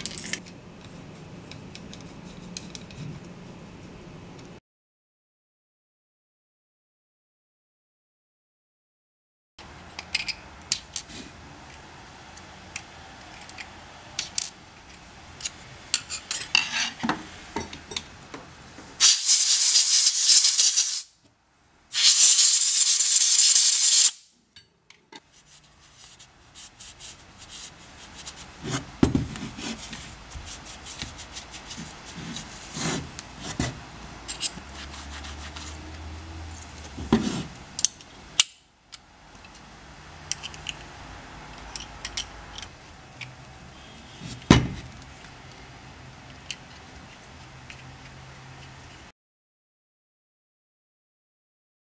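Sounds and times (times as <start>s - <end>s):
metal clinks and knocks: 0.0s - 0.9s
loud hisses: 19.0s - 21.1s.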